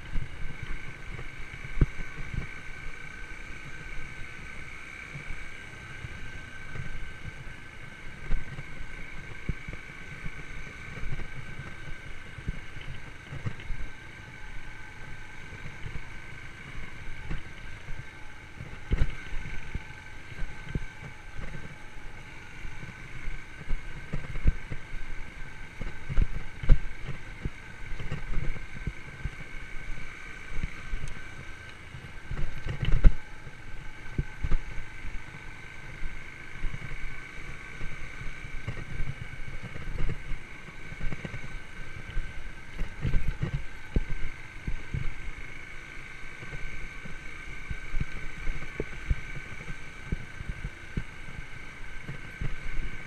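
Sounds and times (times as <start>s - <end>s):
motorcycle engine running: 0.0s - 53.0s
wind on microphone: 5.1s - 53.0s.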